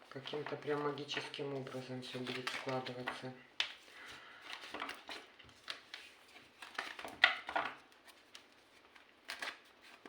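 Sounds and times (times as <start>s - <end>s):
cards snapping and rustling: 4.4s - 10.0s.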